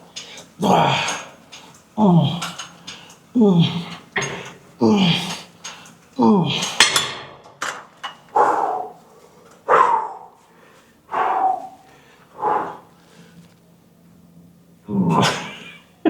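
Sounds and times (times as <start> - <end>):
person grunting with effort: 0.6 - 1.3, 2.0 - 2.6, 3.3 - 5.5, 6.2 - 6.9, 8.4 - 9.0, 14.9 - 15.8
metal clank: 6.7 - 8.2.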